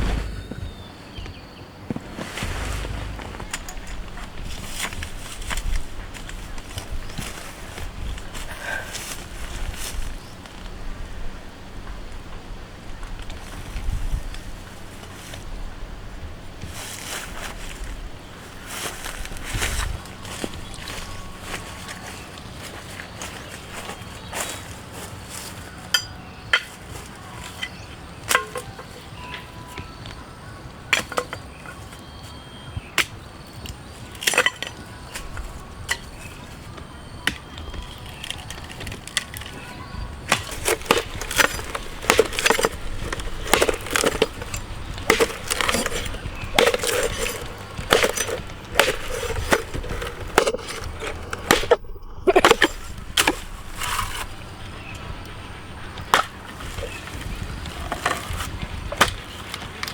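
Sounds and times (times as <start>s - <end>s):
sharp knocks and cracks: 37.2s - 55.1s, 55.9s - 59.9s.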